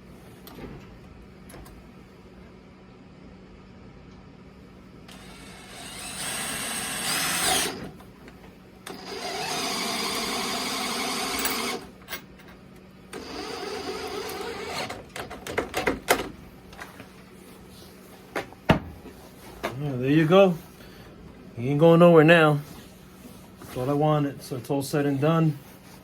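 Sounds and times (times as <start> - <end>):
power driver running: 5.0 - 12.2, 13.1 - 16.9.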